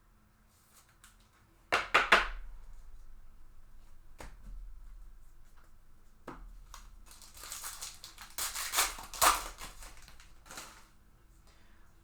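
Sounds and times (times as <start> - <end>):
foil wrapper tearing and crinkling: 6.7 - 11.0.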